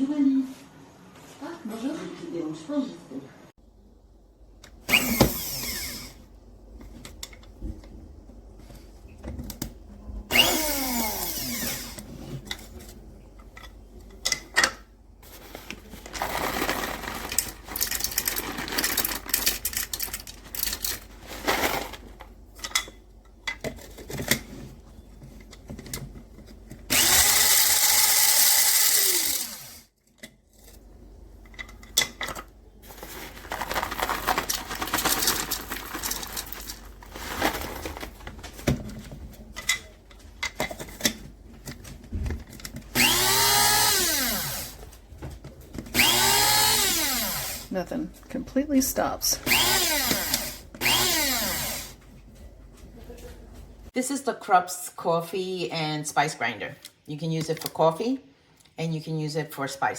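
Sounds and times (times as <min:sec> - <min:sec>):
electric coffee grinder bursts: 0:04.9 - 0:06.2, 0:10.3 - 0:12.0, 0:26.9 - 0:29.9, 0:43.0 - 0:44.8, 0:46.0 - 0:47.7, 0:49.4 - 0:52.0.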